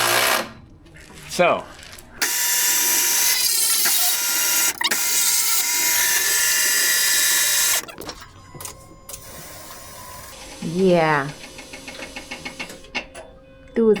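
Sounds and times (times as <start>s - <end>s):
electric power tool running: 0.0s - 0.5s, 2.2s - 8.0s.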